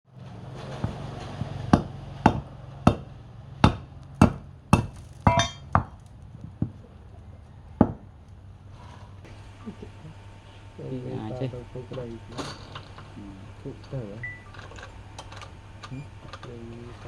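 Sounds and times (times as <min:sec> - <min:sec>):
steady low hum: 0:00.2 - 0:17.0
sharp knocks: 0:00.7 - 0:06.8, 0:07.8 - 0:08.1
metallic clink: 0:05.2 - 0:05.8.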